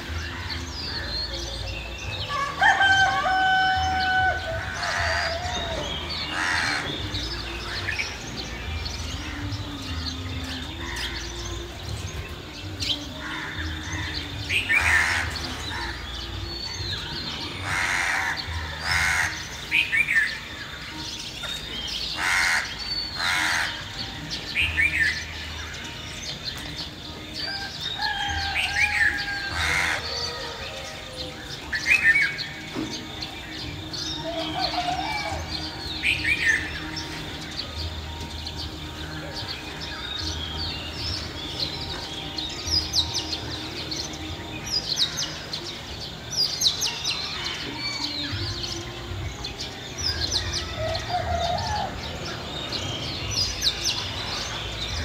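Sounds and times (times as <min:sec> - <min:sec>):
small birds chirping: 0:00.0 - 0:55.0
crows cawing: 0:02.3 - 0:07.2, 0:13.2 - 0:16.3, 0:17.6 - 0:19.8, 0:22.2 - 0:24.0, 0:27.5 - 0:30.6.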